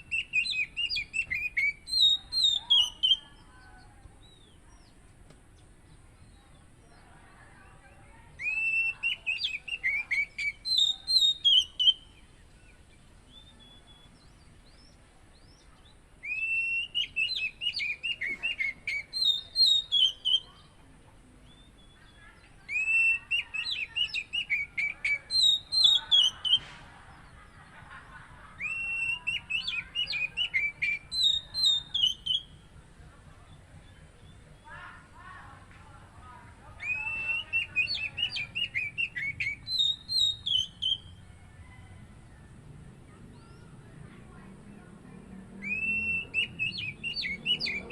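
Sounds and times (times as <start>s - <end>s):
bird singing whistled phrases: 0.0s - 3.5s, 8.3s - 20.7s, 21.4s - 26.7s, 28.6s - 32.7s, 36.8s - 41.8s, 45.6s - 47.9s.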